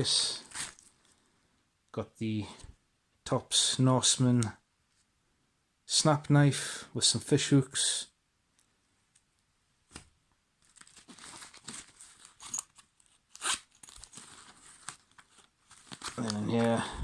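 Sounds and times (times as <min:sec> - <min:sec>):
crinkling and rustling in a wallet: 0:00.5 - 0:01.2, 0:08.6 - 0:17.0.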